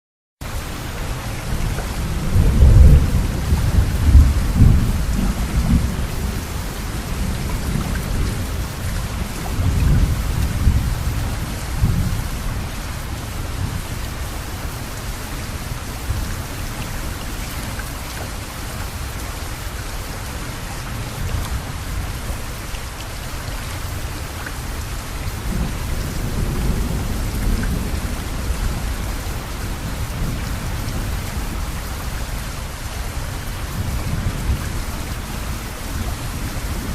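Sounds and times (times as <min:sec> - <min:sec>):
steady rain: 0:00.4 - 0:36.9
thunder rolling: 0:02.0 - 0:12.2.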